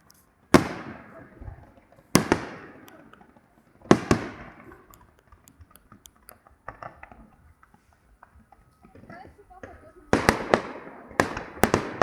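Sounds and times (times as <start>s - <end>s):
faint firework crackling pops: 0.0s - 12.0s
firework bangs with echo: 0.3s - 5.4s, 8.9s - 12.0s.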